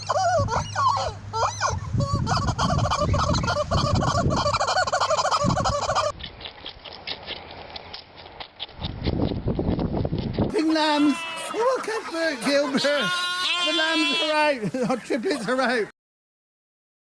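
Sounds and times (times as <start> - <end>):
turkeys gobbling: 0.0 - 6.2, 10.5 - 15.9.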